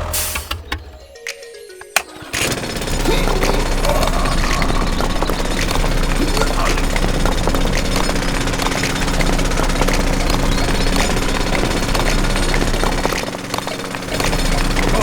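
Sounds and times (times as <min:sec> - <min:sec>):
small machine clattering: 0:01.8 - 0:15.0
machine hum: 0:01.9 - 0:15.0.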